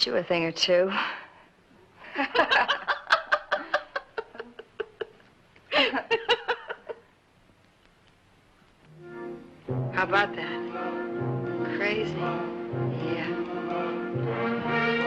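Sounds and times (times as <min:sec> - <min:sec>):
woman laughing: 0:02.1 - 0:07.1.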